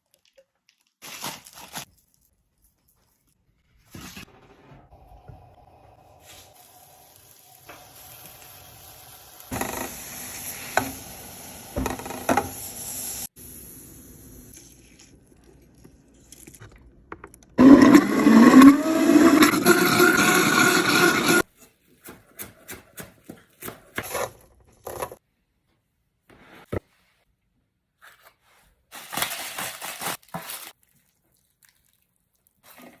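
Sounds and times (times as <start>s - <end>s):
blender motor running: 17.6s - 21.4s.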